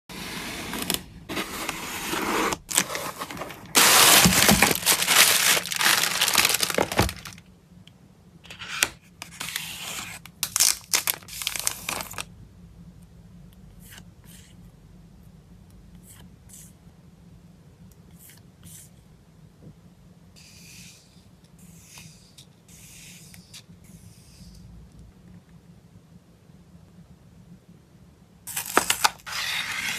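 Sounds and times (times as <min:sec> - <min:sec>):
packaging crinkling and tearing: 0:02.6 - 0:07.4, 0:10.4 - 0:12.3.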